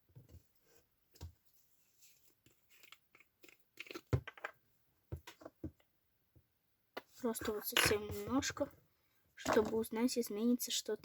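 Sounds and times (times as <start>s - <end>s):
wet squishing of paper and glue: 2.1s - 4.1s.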